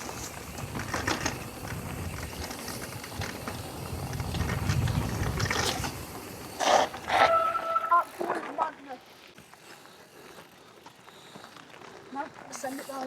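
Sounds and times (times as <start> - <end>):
bike rattling clicks: 0.0 - 7.5
bike tyres rumbling on dirt: 0.0 - 13.0.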